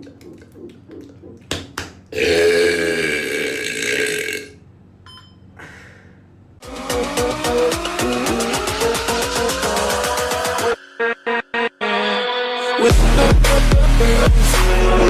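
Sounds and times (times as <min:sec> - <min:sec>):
loud human burp: 0:02.1 - 0:04.6
music: 0:06.6 - 0:15.0.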